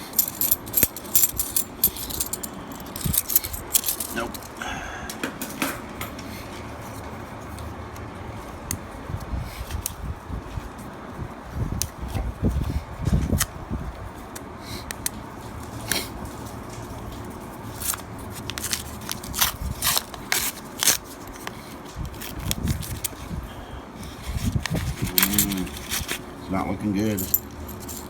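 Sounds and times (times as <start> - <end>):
coins clinking: 0.0 - 4.6, 24.8 - 26.2, 26.8 - 28.0.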